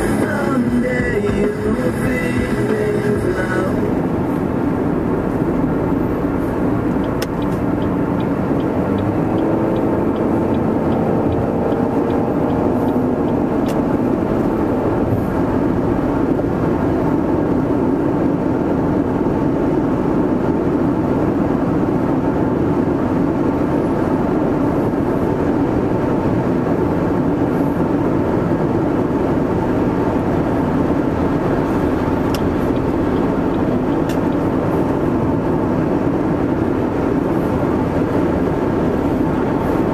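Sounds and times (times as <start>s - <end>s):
car engine accelerating: 0.0s - 39.9s
road noise inside car: 0.0s - 39.9s.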